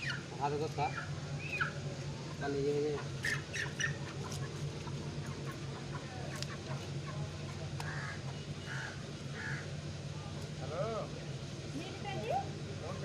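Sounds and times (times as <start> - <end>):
chickens clucking: 0.0 - 9.7
low steady hum: 0.0 - 13.0.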